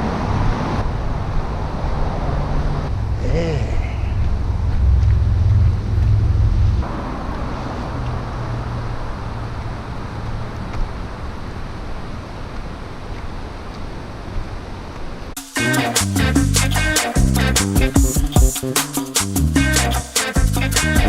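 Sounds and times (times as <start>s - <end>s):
rushing outdoor background noise: 0.0s - 21.0s
music with a beat: 15.4s - 21.0s.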